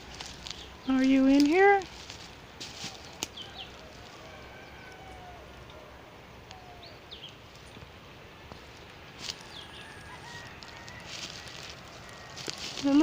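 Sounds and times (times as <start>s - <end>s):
sharp crackle: 0.0s - 5.1s, 8.5s - 13.0s
high bird chirps: 9.3s - 10.4s.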